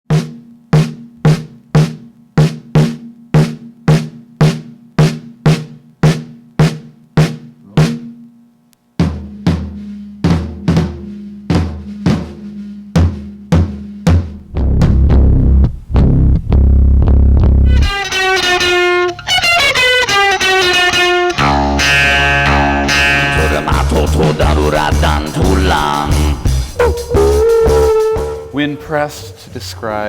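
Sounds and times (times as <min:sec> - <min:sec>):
drum strokes with low ringing: 0:00.1 - 0:08.3, 0:09.0 - 0:18.3, 0:23.4 - 0:29.6.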